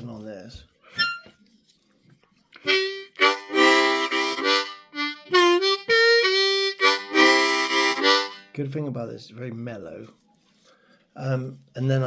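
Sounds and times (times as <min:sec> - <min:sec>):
harmonica riff: 0:00.9 - 0:01.4, 0:02.6 - 0:08.6.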